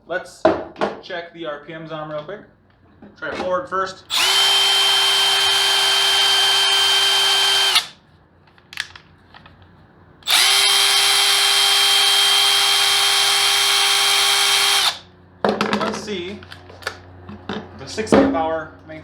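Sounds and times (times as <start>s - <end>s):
impact wrench whining: 4.1s - 8.0s, 10.2s - 15.0s.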